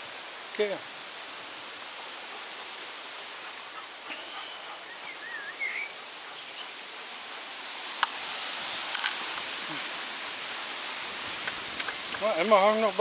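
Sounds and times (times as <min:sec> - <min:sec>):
wind rustling through trees: 0:00.0 - 0:13.0
bird whistles: 0:05.1 - 0:05.9.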